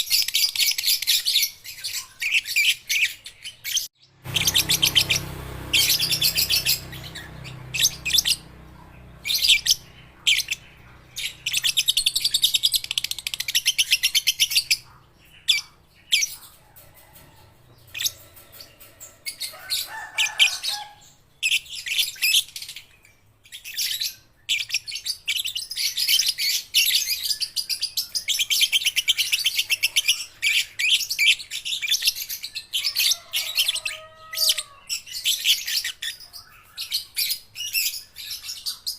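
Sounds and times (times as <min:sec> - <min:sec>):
bird chattering in rapid trills: 0:04.2 - 0:16.8.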